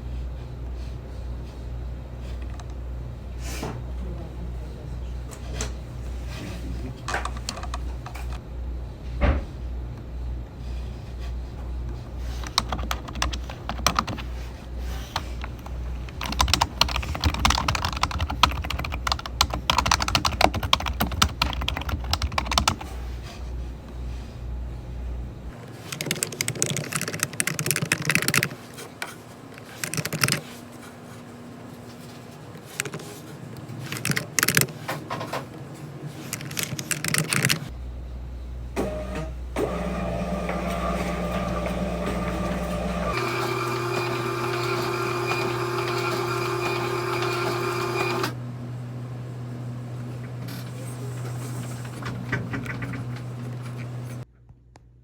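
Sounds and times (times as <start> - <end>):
low steady hum: 0.0 - 25.6, 37.7 - 43.2
typing on computer keyboard: 12.4 - 14.2, 16.1 - 22.8, 25.9 - 28.5.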